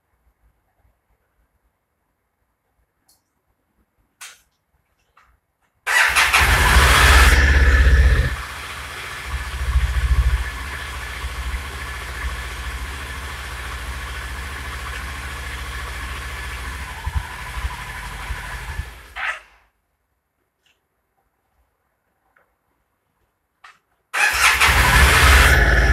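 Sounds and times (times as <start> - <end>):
motorcycle engine starting and idling: 5.9 - 19.2, 24.2 - 25.9.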